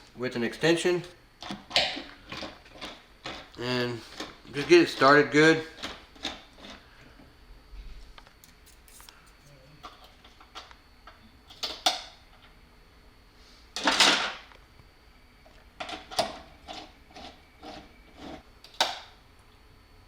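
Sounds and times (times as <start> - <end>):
tool scraping: 8.4 - 9.8, 16.6 - 18.4.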